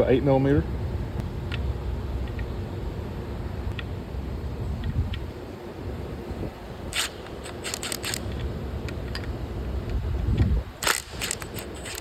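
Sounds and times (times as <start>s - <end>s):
hand tool metal clicks and scrapes: 6.9s - 8.5s, 10.8s - 12.0s.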